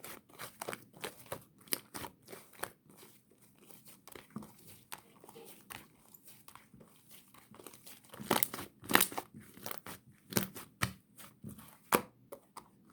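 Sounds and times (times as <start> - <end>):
slime squished by hand: 7.4 - 12.0.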